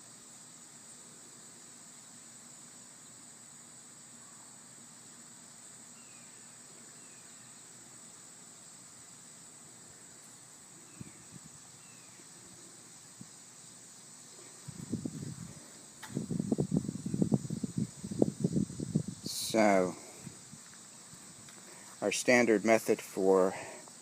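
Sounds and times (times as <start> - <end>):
high-pitched insect drone: 0.0 - 24.0.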